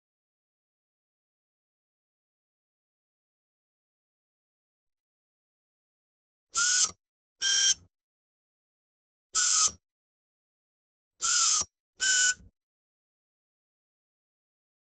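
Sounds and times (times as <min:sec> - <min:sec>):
electric screwdriver motor whine: 0:06.6 - 0:07.8, 0:11.2 - 0:12.4.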